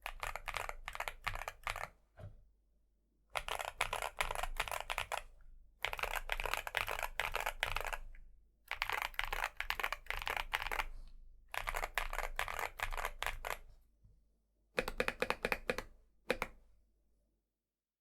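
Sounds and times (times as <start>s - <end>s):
mechanical keyboard typing: 0.0s - 1.9s, 3.4s - 8.1s, 8.7s - 10.9s, 11.5s - 13.6s, 14.8s - 16.6s.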